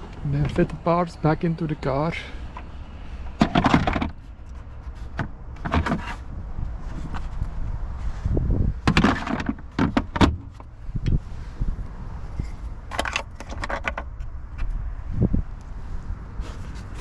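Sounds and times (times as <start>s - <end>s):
car parts clattering and knocking: 0.0s - 1.2s, 2.1s - 7.5s, 8.7s - 10.8s, 12.3s - 14.8s.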